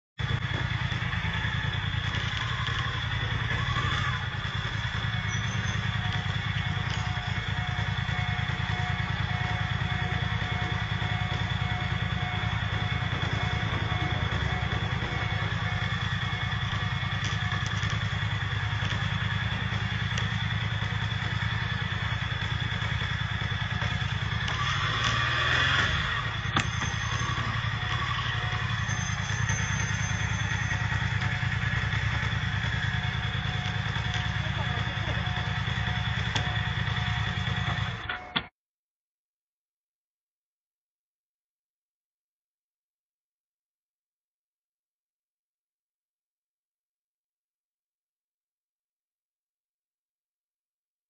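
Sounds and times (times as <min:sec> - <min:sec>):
vehicle engine idling: 0:00.2 - 0:38.2.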